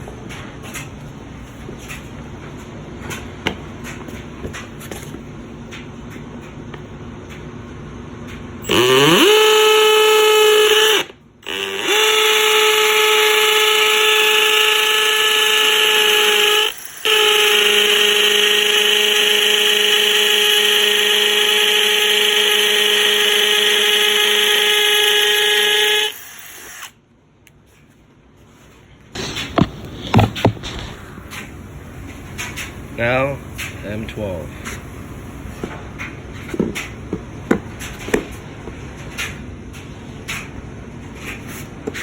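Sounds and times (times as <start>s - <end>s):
hammer drill motor whine: 8.6s - 27.0s.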